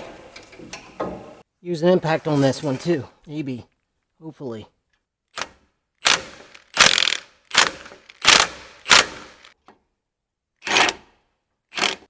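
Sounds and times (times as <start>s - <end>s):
impact wrench hammering: 0.0s - 1.4s.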